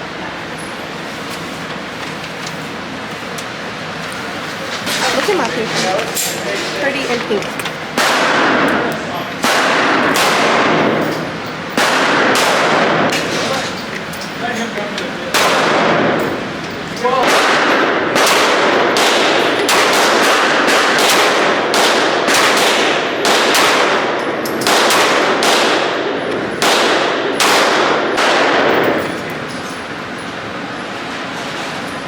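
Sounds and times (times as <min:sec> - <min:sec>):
gunshots with long echo: 0:07.9 - 0:13.4, 0:15.3 - 0:16.3, 0:17.2 - 0:29.2.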